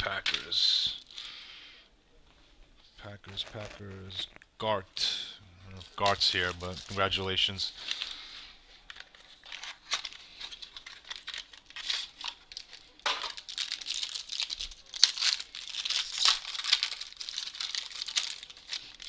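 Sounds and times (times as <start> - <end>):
plastic crinkling: 3.2 - 4.4, 5.7 - 19.0
packaging crackles: 3.2 - 4.5, 5.8 - 19.0.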